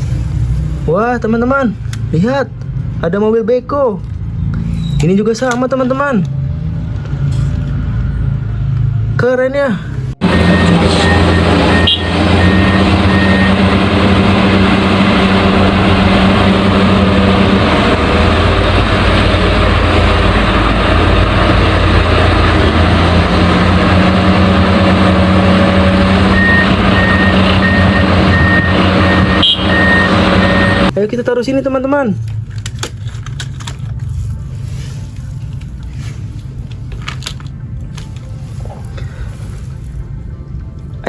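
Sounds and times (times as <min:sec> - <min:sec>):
diesel engine running: 0:09.8 - 0:31.8
reversing alarm beeping: 0:10.2 - 0:16.3, 0:25.8 - 0:30.9.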